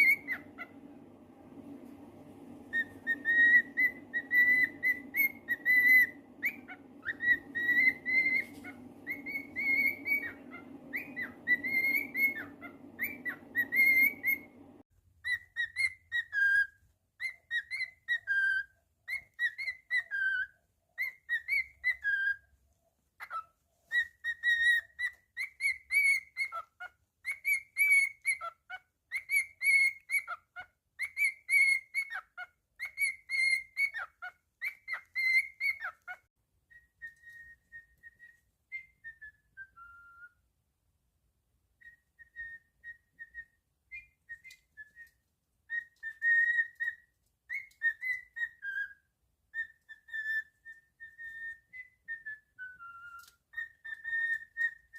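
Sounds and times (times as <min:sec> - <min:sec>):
cockatiel whistling: 0:00.0 - 0:22.5, 0:23.2 - 0:40.5, 0:41.7 - 0:54.9.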